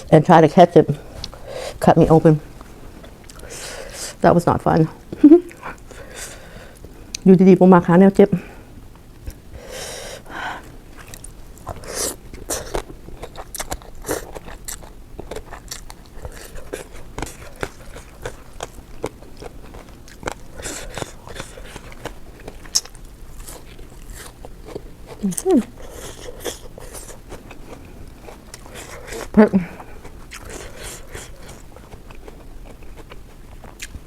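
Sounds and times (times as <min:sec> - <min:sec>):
person chewing food: 0:02.5 - 0:04.2, 0:08.7 - 0:34.0.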